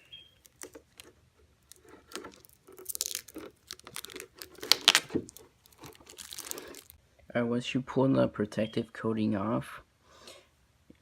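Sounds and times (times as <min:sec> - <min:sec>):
plastic film crackling as peeled: 0:00.3 - 0:07.0.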